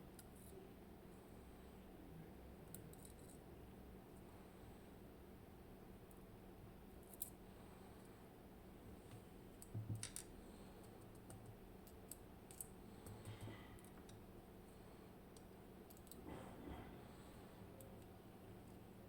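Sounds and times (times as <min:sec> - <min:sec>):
faint clicks of small parts: 0:00.1 - 0:00.6, 0:02.6 - 0:03.4, 0:07.0 - 0:07.4, 0:09.0 - 0:14.3, 0:15.3 - 0:16.5, 0:17.7 - 0:18.2.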